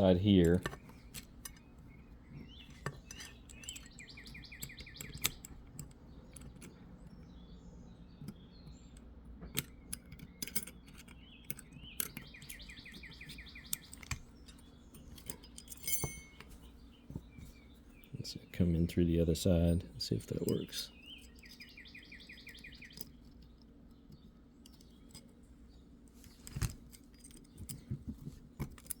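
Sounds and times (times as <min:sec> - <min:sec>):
metallic clicks of revolver parts: 0:00.4 - 0:01.7, 0:02.3 - 0:07.3, 0:08.2 - 0:16.6, 0:20.2 - 0:25.4
bird trilling: 0:01.8 - 0:05.5, 0:20.4 - 0:23.2.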